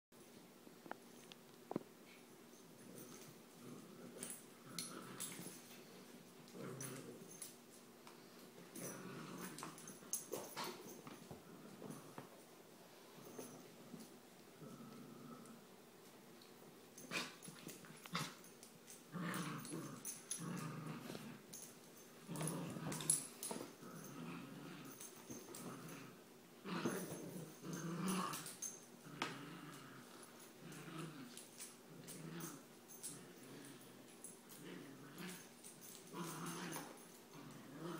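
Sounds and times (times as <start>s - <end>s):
puppies growling: 2.7s - 7.5s, 8.7s - 12.4s, 13.2s - 15.6s, 17.0s - 37.9s.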